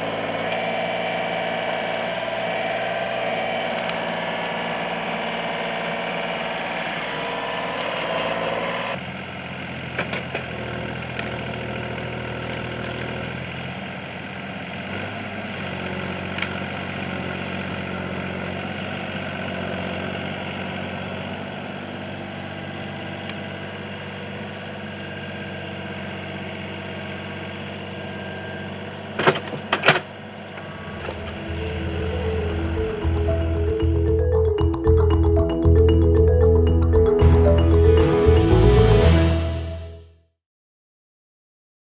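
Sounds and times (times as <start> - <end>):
excavator engine running: 30.4 - 34.3.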